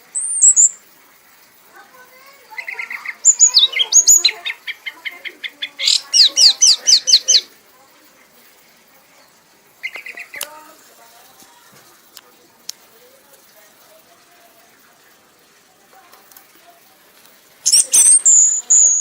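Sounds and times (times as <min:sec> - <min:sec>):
high bird chirp: 0:00.0 - 0:00.8, 0:02.5 - 0:07.5, 0:09.2 - 0:10.6, 0:17.6 - 0:19.0
songbird singing trills and whistles: 0:00.0 - 0:00.9, 0:02.4 - 0:07.6, 0:09.2 - 0:10.6, 0:17.6 - 0:19.0.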